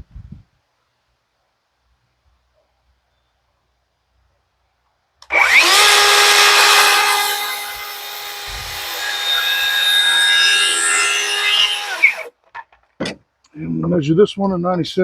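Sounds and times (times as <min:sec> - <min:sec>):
circular saw cutting wood: 0:05.2 - 0:12.3.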